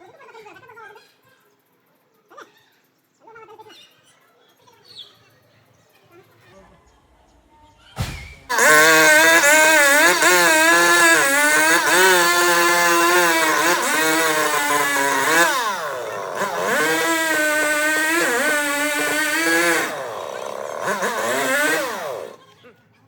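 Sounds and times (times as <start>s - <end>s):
chainsaw cutting at high revs: 8.5s - 22.4s.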